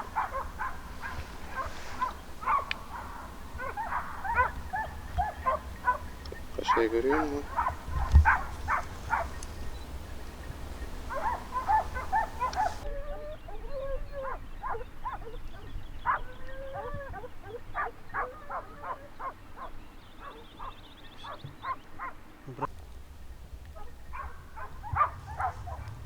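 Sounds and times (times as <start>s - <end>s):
dogs howling: 0.0s - 22.2s, 23.7s - 26.0s
dogs barking and baying: 0.0s - 26.0s.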